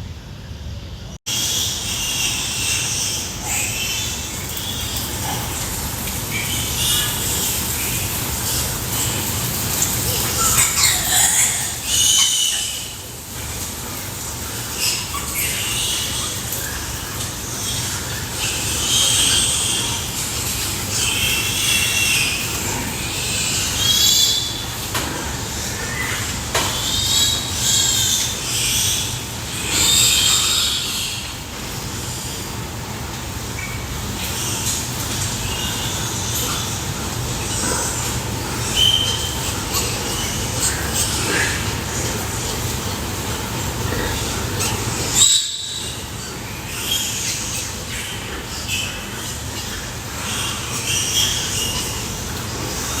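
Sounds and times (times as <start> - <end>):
steady low hum: 0.0 - 53.0
pigs squealing: 1.3 - 53.0.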